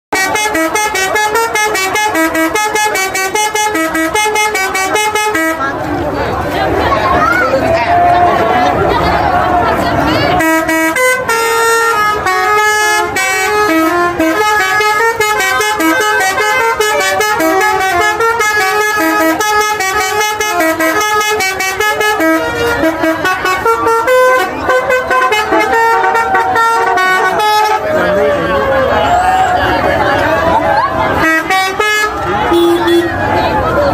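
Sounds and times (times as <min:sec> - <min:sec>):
multi-tone air horn melody: 0:00.1 - 0:05.9, 0:10.3 - 0:29.0, 0:31.1 - 0:33.2.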